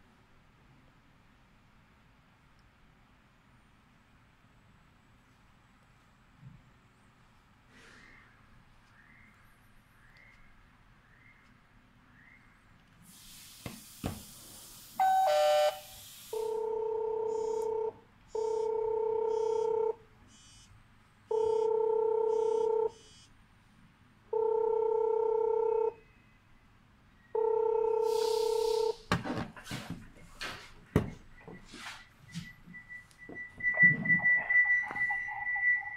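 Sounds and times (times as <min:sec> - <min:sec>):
burst of hiss: 0:13.0 - 0:16.5, 0:28.1 - 0:29.1
short stepped beep: 0:31.1 - 0:35.9.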